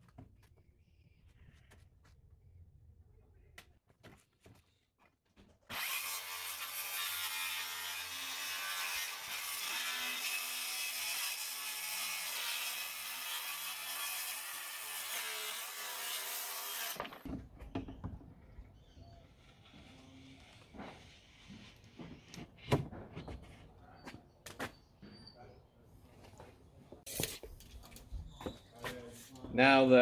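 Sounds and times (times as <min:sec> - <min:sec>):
power saw cutting plywood: 0:05.7 - 0:17.3.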